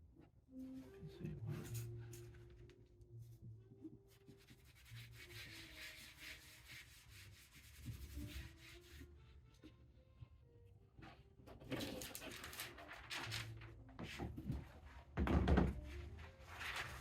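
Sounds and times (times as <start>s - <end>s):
tool rubbing over paper: 4.4s - 9.0s.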